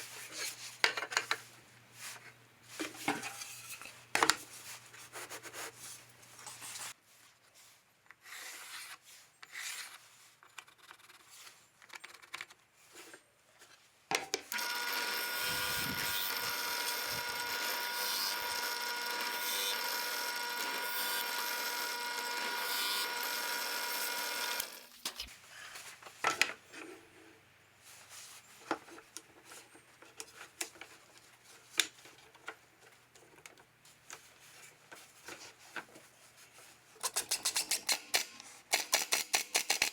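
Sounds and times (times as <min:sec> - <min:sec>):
power tool running: 0:14.5 - 0:25.0.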